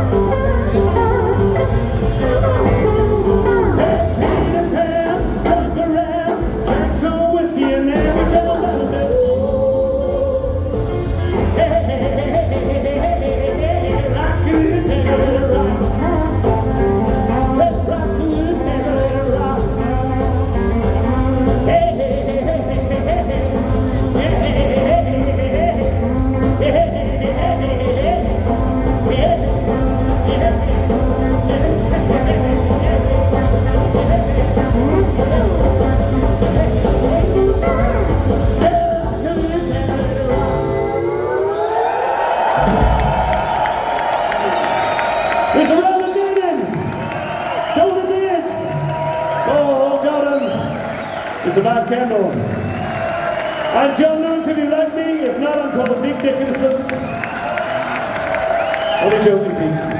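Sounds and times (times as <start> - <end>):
person singing: 0.0 - 41.7
rock band playing live: 0.0 - 59.9.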